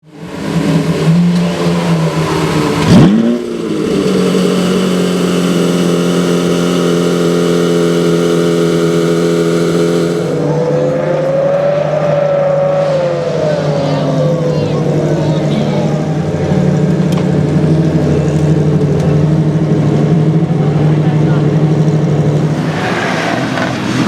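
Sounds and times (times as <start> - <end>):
car engine idling: 0.0 - 11.0, 13.2 - 22.8
engine throttle blip: 0.2 - 10.6
rising higher tone: 0.6 - 15.3.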